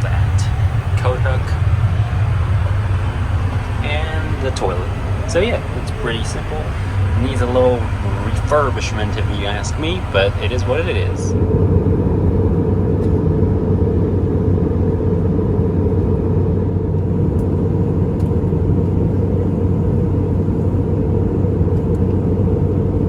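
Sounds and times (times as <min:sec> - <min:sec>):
faint steady hum: 0:00.0 - 0:16.4
airplane cabin rumble: 0:00.0 - 0:23.0.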